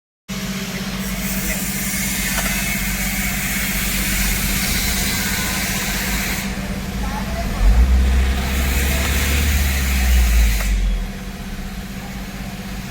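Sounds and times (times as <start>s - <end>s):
diesel engine knocking: 0.3s - 12.9s.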